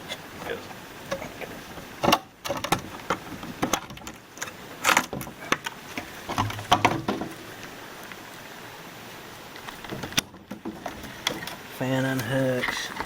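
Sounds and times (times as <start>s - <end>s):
clicks and rattles of plastic parts: 2.0s - 7.3s.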